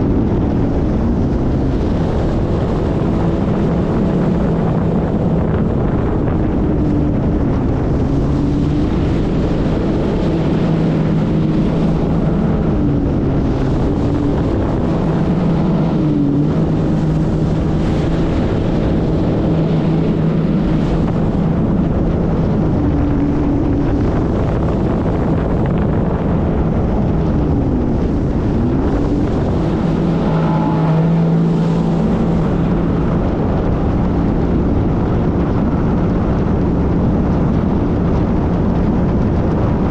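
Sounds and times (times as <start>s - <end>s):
jet ski engine running: 0.0s - 39.9s
wind buffeting microphone: 0.0s - 39.9s.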